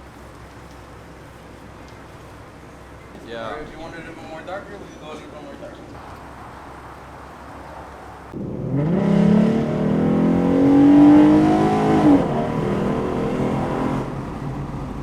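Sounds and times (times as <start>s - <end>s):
car engine accelerating: 8.3s - 15.0s.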